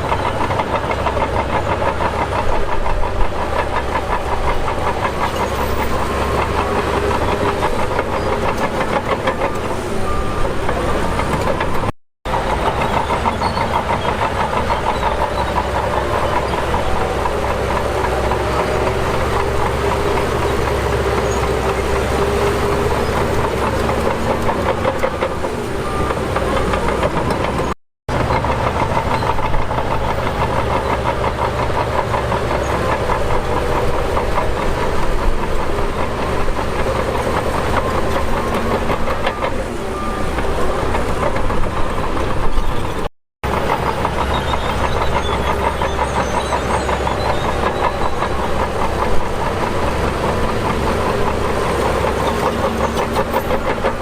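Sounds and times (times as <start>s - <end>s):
bulldozer diesel engine running: 0.0s - 54.0s
steel tracks clattering: 0.0s - 54.0s.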